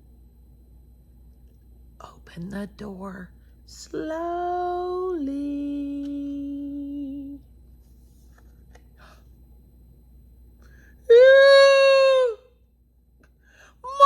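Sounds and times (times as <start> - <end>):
woman humming a long note: 3.8 - 7.4.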